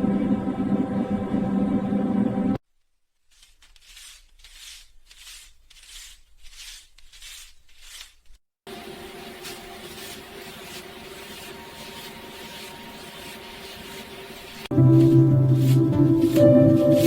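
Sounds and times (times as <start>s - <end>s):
loud humming drone: 0.0s - 2.6s
steady hum: 0.0s - 2.6s
banknotes rustling: 3.1s - 17.0s.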